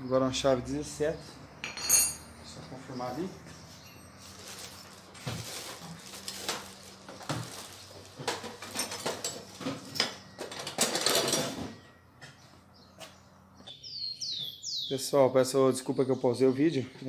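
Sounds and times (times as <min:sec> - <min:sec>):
scraping rustle: 0:03.6 - 0:09.9.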